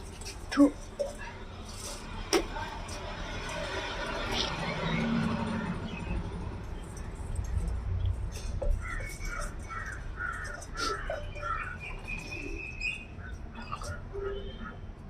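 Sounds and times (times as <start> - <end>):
bird calling: 8.6 - 14.8.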